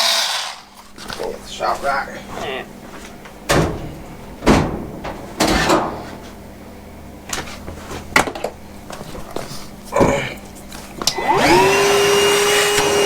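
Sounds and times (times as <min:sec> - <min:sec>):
hard objects knocking and clunking: 0:03.1 - 0:06.4.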